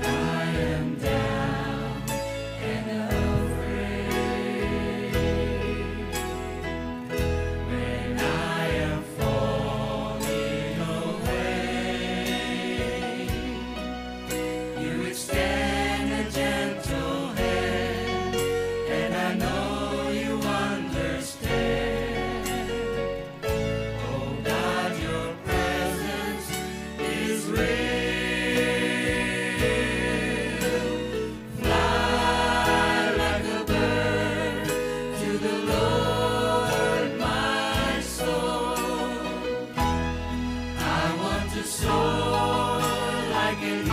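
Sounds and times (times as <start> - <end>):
low bass line: 0.0 - 14.2
gospel choir singing: 0.0 - 43.9.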